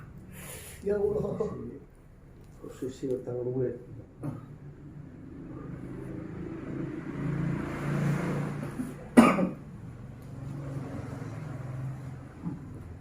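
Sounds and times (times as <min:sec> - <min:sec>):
motor vehicle passing: 0:02.7 - 0:13.0
sharp cough: 0:09.1 - 0:09.7.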